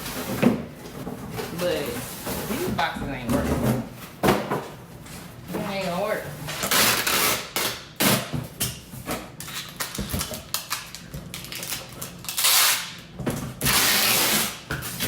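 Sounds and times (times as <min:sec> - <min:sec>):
cardboard tearing: 0:06.6 - 0:08.3, 0:13.6 - 0:15.0.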